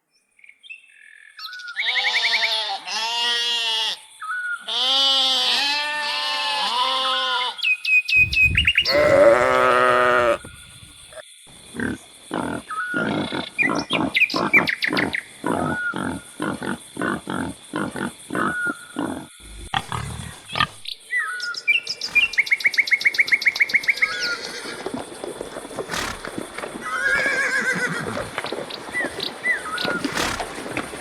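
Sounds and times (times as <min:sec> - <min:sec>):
farm animals calling: 0:08.2 - 0:11.2, 0:22.0 - 0:31.0.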